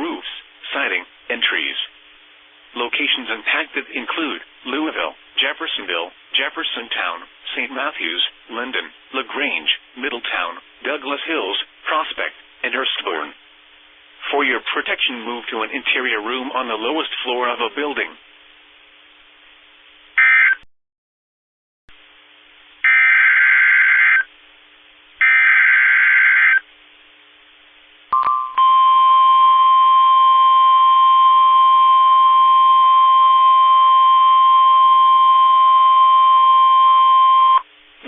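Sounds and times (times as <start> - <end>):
steady warning alarm tone: 25.2 - 26.6.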